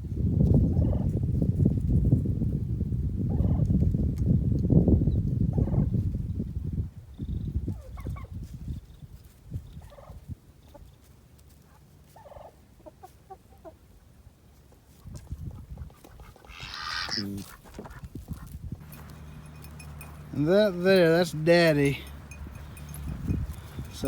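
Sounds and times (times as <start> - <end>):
turkeys calling: 12.1 - 13.8, 16.0 - 24.0.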